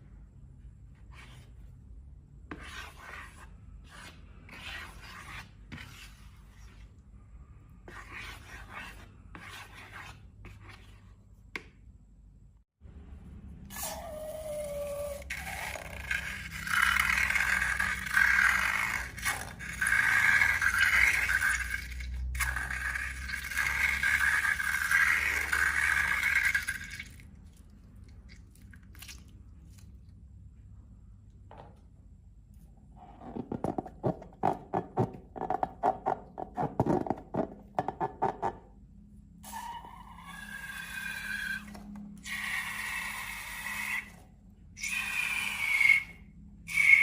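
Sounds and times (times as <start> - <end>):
slime scraping: 2.5 - 7.0, 13.7 - 30.1.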